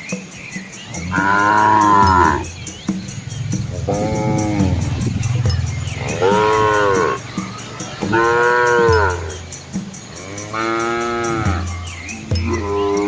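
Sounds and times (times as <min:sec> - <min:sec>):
cows mooing: 0:01.1 - 0:09.6.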